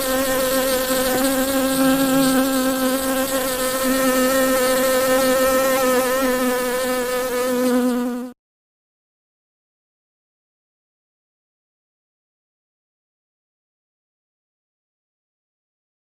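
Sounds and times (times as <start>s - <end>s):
bees buzzing: 0.0s - 8.4s.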